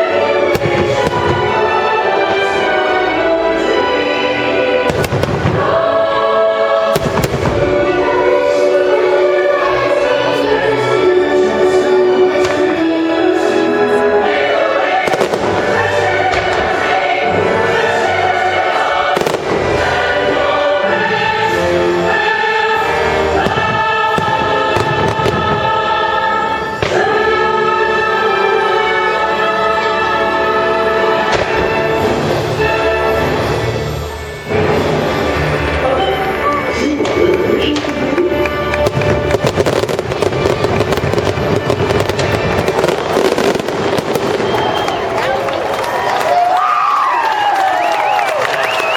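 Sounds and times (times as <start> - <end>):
choral orchestral music: 0.0 - 48.9
fireworks bursts and bangs: 0.5 - 1.7, 4.8 - 5.8, 6.9 - 8.0, 14.9 - 17.2, 19.1 - 20.2, 23.4 - 25.8, 37.0 - 46.0.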